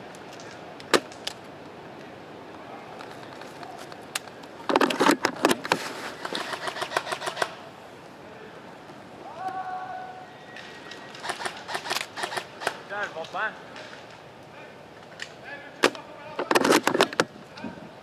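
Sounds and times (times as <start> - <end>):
steady outdoor hiss: 0.0 - 18.0
sharp clicks and knocks: 4.1 - 7.5, 15.1 - 17.3.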